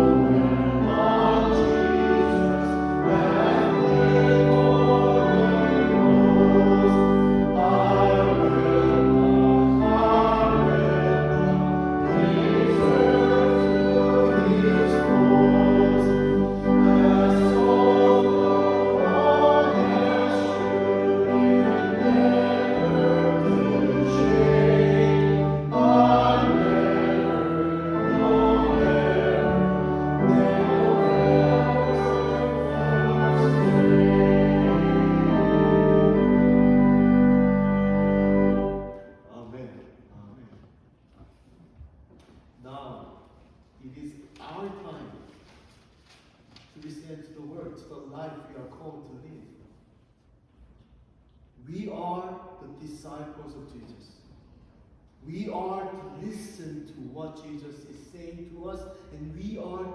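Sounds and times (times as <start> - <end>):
voices singing a hymn: 0.0 - 39.1
church organ chords: 0.0 - 39.6.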